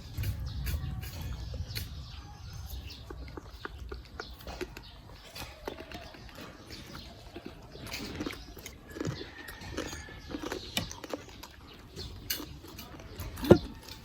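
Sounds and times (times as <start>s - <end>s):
chewing crispy food: 0.0s - 14.0s.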